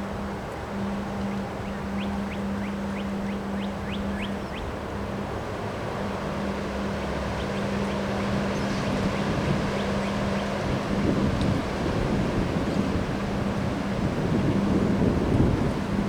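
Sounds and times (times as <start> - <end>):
wind blowing hard: 8.2 - 16.0.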